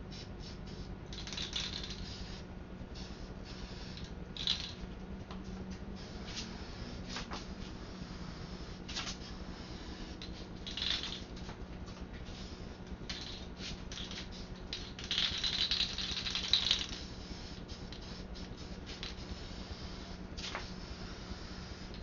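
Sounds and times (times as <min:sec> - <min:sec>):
aerosol can rattling: 0:01.2 - 0:02.1, 0:04.4 - 0:04.8, 0:10.6 - 0:11.2, 0:13.1 - 0:17.0.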